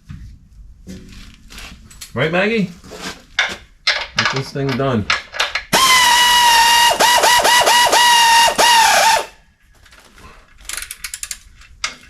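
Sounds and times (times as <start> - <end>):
power ratchet whining: 5.8 - 9.3.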